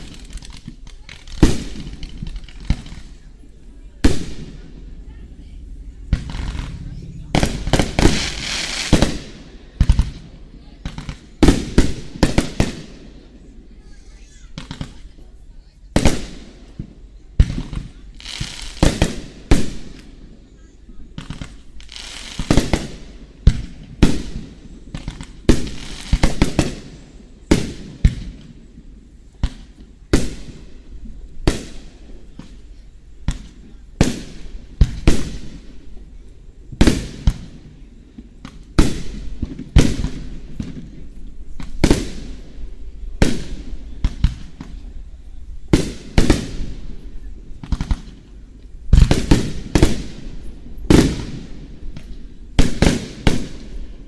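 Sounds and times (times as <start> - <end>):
firework booms: 0.0 - 15.2, 29.4 - 54.0
crackling firework tails: 0.0 - 54.0.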